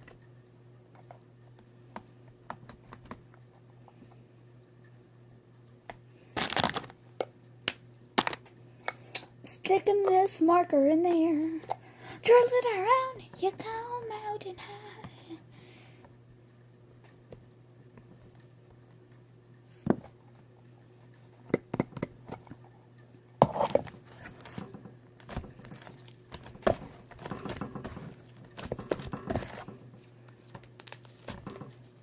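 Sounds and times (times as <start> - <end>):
slime squelching: 23.4 - 32.0.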